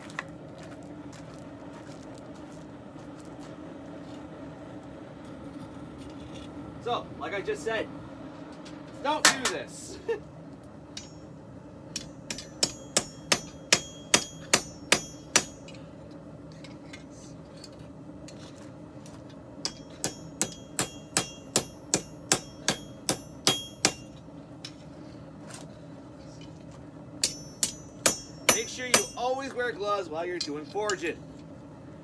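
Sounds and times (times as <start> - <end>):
hammer striking steel on anvil: 10.9 - 11.3, 11.9 - 15.8, 19.6 - 24.8, 27.2 - 29.6.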